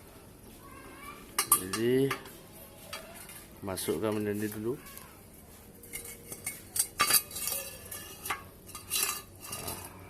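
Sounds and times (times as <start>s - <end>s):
steel pieces clinking together: 1.4s - 2.2s, 5.8s - 10.0s.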